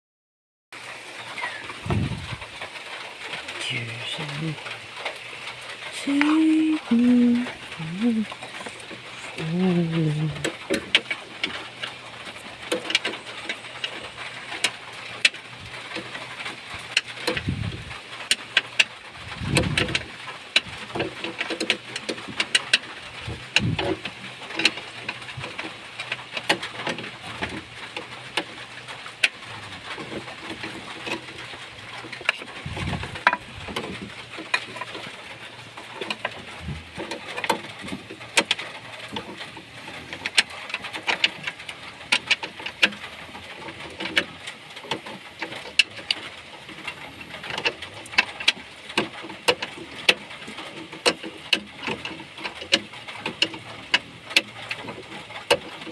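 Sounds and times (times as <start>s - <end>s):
low cooing calls: 1.0s - 2.4s.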